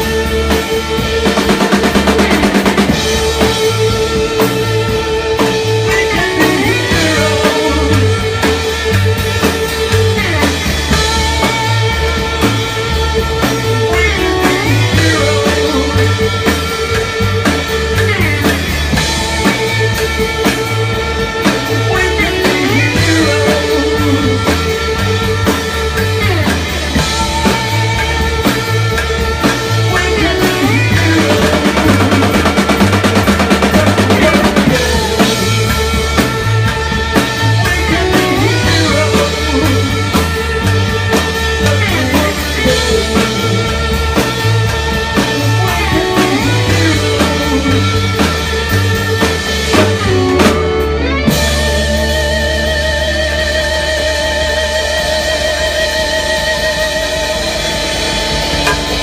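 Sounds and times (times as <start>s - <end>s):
drum kit: 0.0s - 59.0s
rock band playing: 0.0s - 59.0s
guitar chord ringing out: 58.5s - 59.0s.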